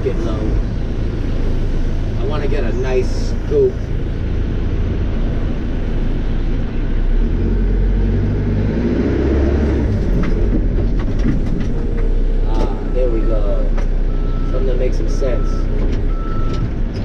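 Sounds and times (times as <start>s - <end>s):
backhoe diesel engine working: 9.8s - 17.0s.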